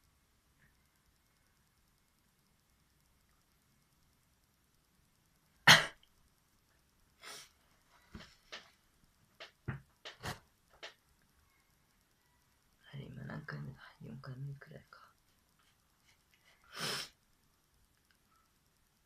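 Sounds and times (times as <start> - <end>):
person sneezing: 5.7 - 6.0
person snuffling: 7.2 - 8.4, 16.1 - 17.2.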